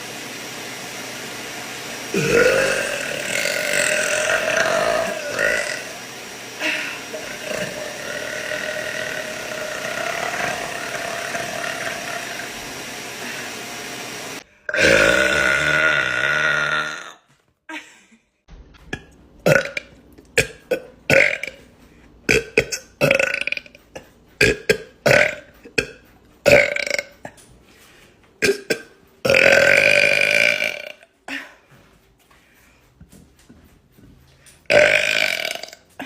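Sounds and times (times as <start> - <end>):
woman belching: 2.1 - 6.0, 6.6 - 12.6, 14.7 - 17.3, 18.9 - 21.6, 22.3 - 27.4, 28.4 - 31.1, 34.7 - 36.0.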